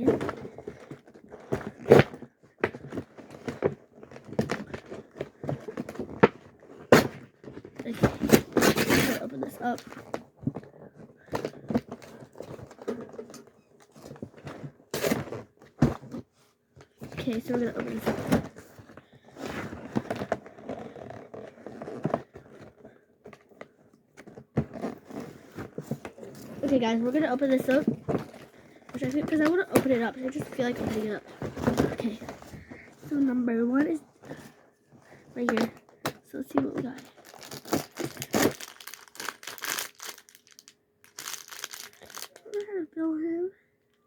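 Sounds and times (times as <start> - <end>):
cardboard box being handled: 24.2 - 34.4.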